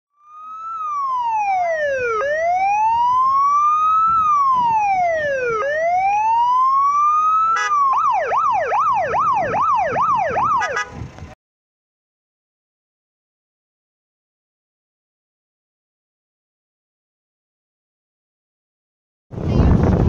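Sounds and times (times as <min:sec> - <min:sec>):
electronic siren wailing and yelping: 0:00.2 - 0:10.9.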